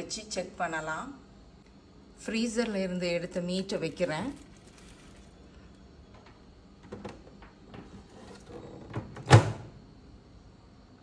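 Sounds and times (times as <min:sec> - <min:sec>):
microwave door shutting: 0:08.6 - 0:09.8.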